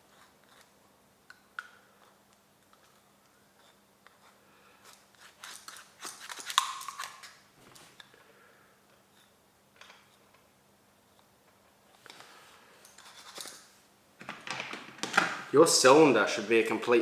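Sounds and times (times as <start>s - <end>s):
small parts clicking and scraping: 0.1s - 8.2s, 12.0s - 13.7s.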